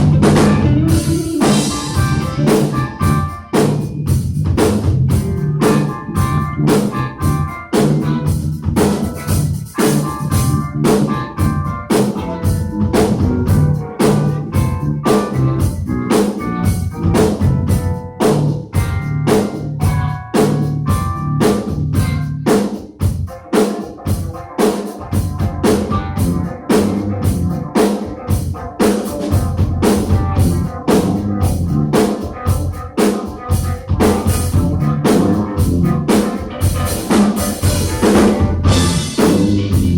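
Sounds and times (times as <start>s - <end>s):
higher pitched instrument parts: 0.0s - 18.1s, 33.6s - 39.9s
sustained low bass notes: 0.0s - 22.5s, 25.5s - 27.7s, 29.4s - 32.7s, 33.6s - 36.9s, 37.6s - 39.9s
drum kit beat with rimshots: 0.0s - 39.9s.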